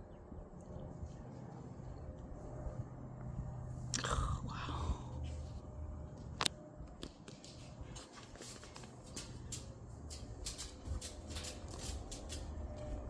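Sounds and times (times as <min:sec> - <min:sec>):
light clicks and rustling: 0:05.3 - 0:13.0
wind rumbling on microphone: 0:08.9 - 0:13.0.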